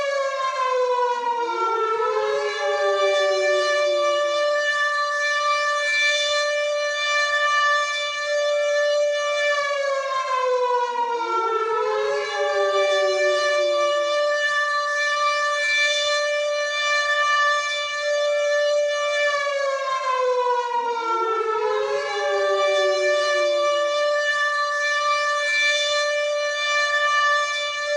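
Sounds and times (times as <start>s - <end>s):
air raid siren wailing: 0.0s - 27.9s.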